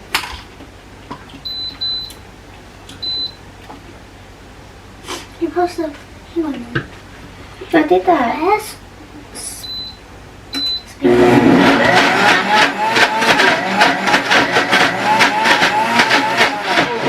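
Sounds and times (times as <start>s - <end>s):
blender motor running: 11.0s - 17.0s.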